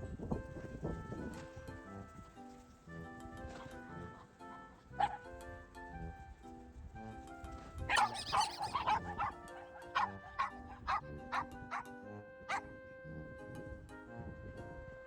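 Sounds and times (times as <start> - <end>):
background music: 0.0 - 15.0
dog barking: 5.0 - 5.3, 7.9 - 11.9, 12.5 - 12.7.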